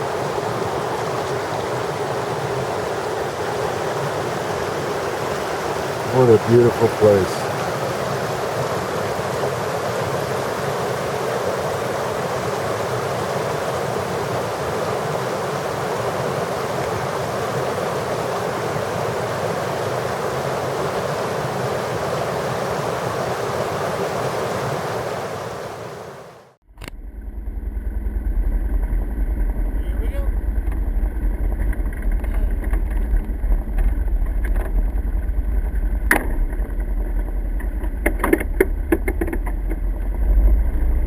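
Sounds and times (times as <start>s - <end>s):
stream flowing: 0.0s - 26.6s, 29.0s - 41.0s
low engine rumble: 26.7s - 41.0s.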